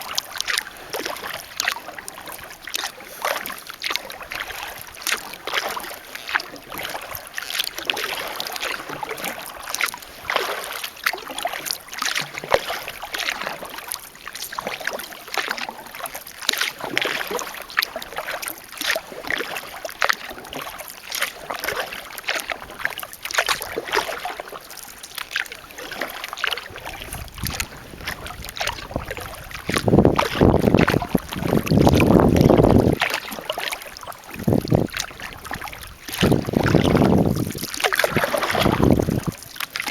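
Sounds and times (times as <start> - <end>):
paddle splashing water: 0.0 - 39.9
wind buffeting microphone: 26.7 - 33.2, 34.3 - 39.5.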